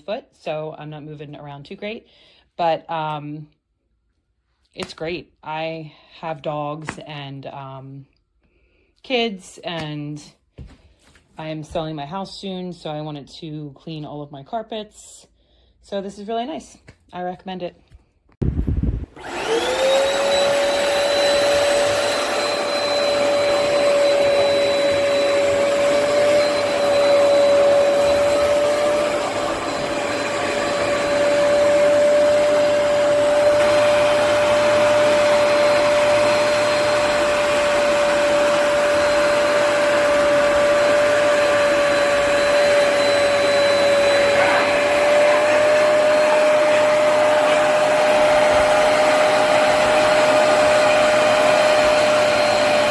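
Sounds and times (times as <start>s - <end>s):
carpet cleaner motor whining: 19.2s - 52.9s.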